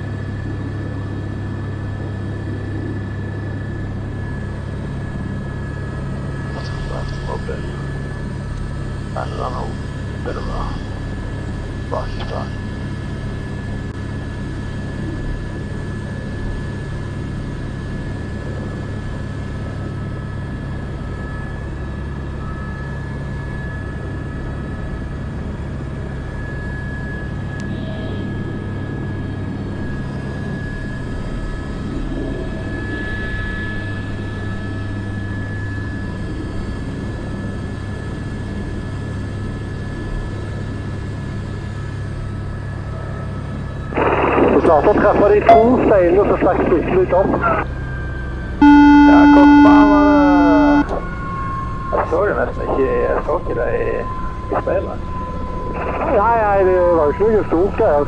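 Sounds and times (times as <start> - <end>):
helicopter rotor and engine drone: 0.0 - 58.0
high turbine whine: 44.0 - 47.7, 48.6 - 51.0.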